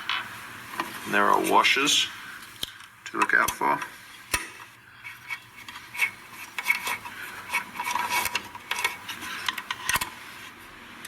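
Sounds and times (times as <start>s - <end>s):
small metal clicks and scrapes: 2.6s - 10.2s.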